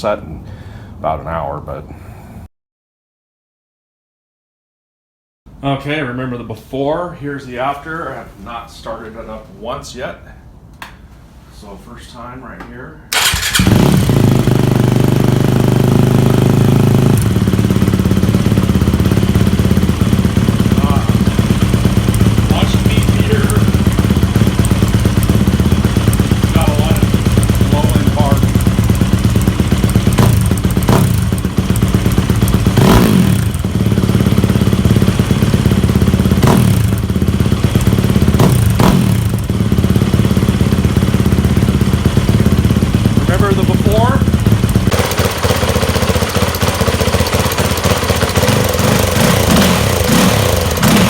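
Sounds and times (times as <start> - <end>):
motorcycle engine idling: 13.2 - 51.0.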